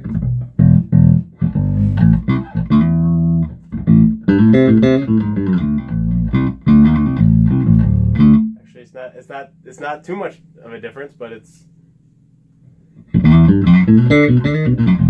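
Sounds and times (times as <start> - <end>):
electric bass guitar plucked: 0.0 - 8.6, 13.0 - 15.0.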